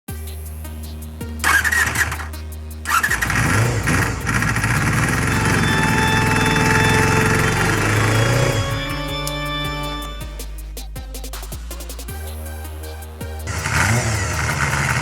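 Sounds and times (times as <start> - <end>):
background music: 0.1 - 15.0
motorcycle engine starting and running: 1.4 - 9.7, 13.5 - 15.0.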